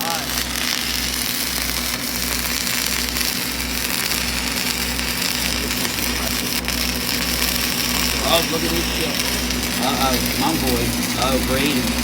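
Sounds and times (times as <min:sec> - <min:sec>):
pulsing machine hum: 0:00.0 - 0:12.0
welding arc crackling and hissing: 0:00.0 - 0:12.0.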